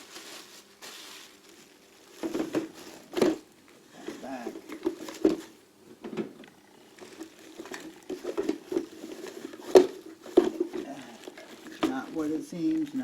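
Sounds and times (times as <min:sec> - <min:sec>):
tools clattering in a toolbox: 0:07.5 - 0:13.0.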